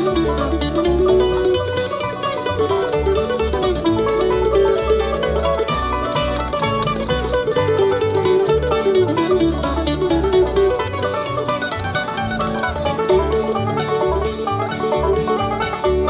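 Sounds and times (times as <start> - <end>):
bass notes: 0.0 - 16.0
bluegrass band playing: 0.0 - 16.0.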